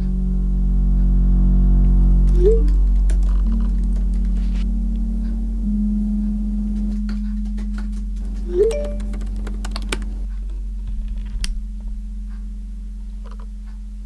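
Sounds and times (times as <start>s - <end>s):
typewriter keys clacking: 7.8s - 10.3s.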